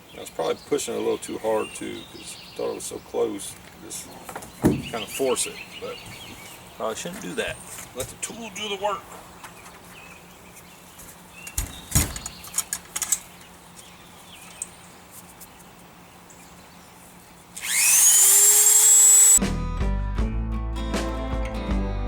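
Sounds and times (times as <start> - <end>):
handling clicks and knocks: 7.0 - 8.4, 11.4 - 14.8
rotary tool whine: 17.5 - 19.4
music: 19.4 - 22.0.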